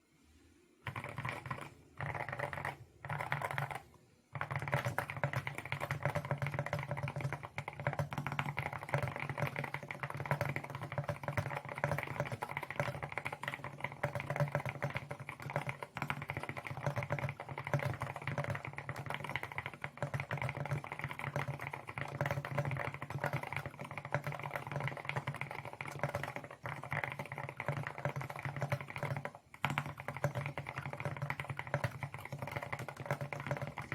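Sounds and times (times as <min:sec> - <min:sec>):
mechanical keyboard typing: 0:00.8 - 0:33.9.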